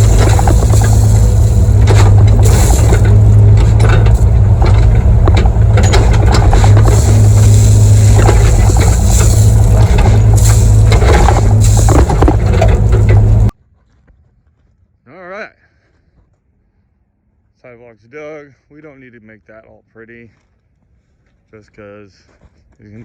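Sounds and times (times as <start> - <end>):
bucket scraping dirt and gravel: 0.0 - 13.5
excavator engine running: 0.0 - 13.5.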